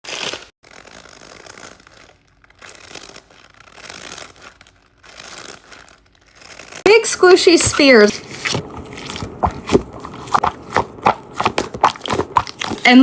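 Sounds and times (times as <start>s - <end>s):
plastic packaging crinkling: 0.1s - 6.9s.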